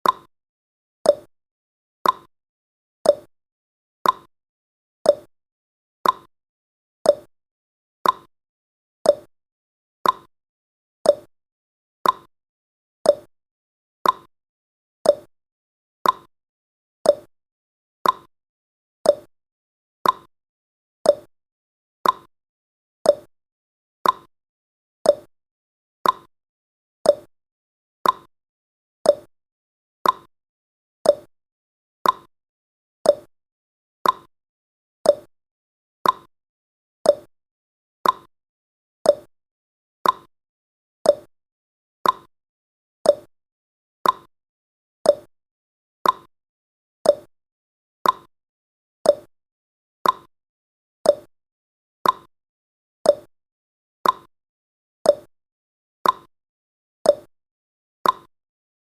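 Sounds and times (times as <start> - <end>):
timer ticking: 0.0 - 0.3, 1.1 - 1.3, 2.0 - 2.3, 3.1 - 3.3, 4.0 - 4.3, 5.1 - 5.3, 6.0 - 6.3, 7.1 - 7.3, 8.0 - 8.3, 9.1 - 9.3, 10.0 - 10.3, 11.1 - 11.3, 12.0 - 12.3, 13.1 - 13.3, 14.0 - 14.3, 15.1 - 15.3, 16.0 - 16.3, 17.1 - 17.3, 18.0 - 18.3, 19.1 - 19.3, 20.0 - 20.3, 21.1 - 21.3, 22.0 - 22.3, 23.1 - 23.3, 24.0 - 24.3, 25.1 - 25.3, 26.0 - 26.3, 27.1 - 27.3, 28.0 - 28.3, 29.1 - 29.3, 30.0 - 30.3, 31.0 - 31.3, 32.0 - 32.3, 33.1 - 33.3, 34.0 - 34.3, 35.1 - 35.3, 36.0 - 36.3, 37.1 - 37.3, 38.0 - 38.3, 39.1 - 39.3, 40.0 - 40.3, 41.1 - 41.3, 42.0 - 42.3, 43.1 - 43.3, 44.0 - 44.3, 45.1 - 45.3, 46.0 - 46.3, 47.0 - 47.3, 48.0 - 48.3, 49.1 - 49.3, 50.0 - 50.3, 51.1 - 51.3, 52.0 - 52.3, 53.1 - 53.3, 54.0 - 54.3, 55.1 - 55.3, 56.0 - 56.3, 57.1 - 57.3, 58.0 - 58.3.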